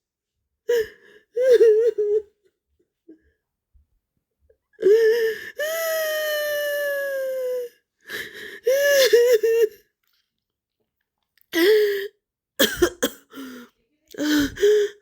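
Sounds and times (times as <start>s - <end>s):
girl crying and sobbing: 0.7s - 2.4s, 4.8s - 9.8s, 14.2s - 15.0s
wheezy gasping breaths: 8.0s - 9.0s, 13.3s - 15.0s.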